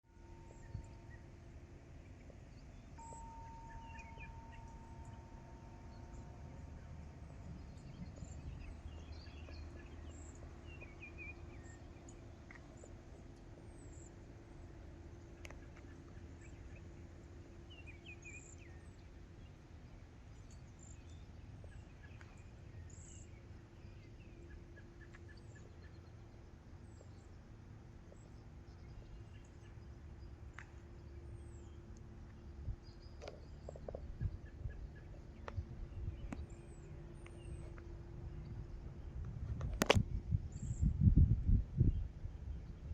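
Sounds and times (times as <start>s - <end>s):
low rumbling background: 0.0s - 42.9s
steady low hum: 0.0s - 42.9s
birds chirping: 0.2s - 14.7s.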